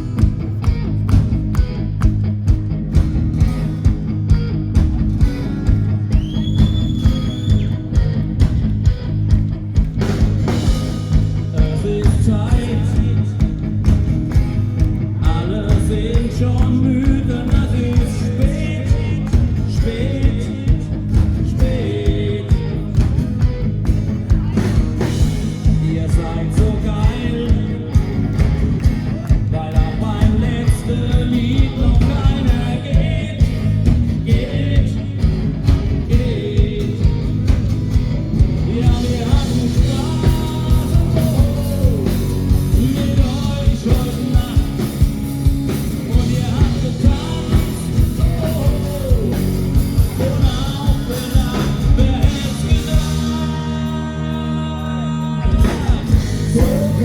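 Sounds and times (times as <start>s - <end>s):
steady drum beat: 0.0s - 54.0s, 55.5s - 57.0s
electric guitar: 0.0s - 57.0s
rock and roll band playing: 0.0s - 57.0s
person singing: 11.2s - 13.7s, 38.5s - 45.3s, 45.9s - 57.0s.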